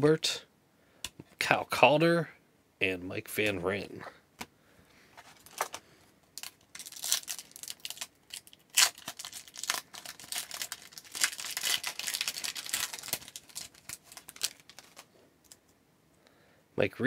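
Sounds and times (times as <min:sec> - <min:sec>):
wrapper tearing and crinkling: 0:06.4 - 0:15.6.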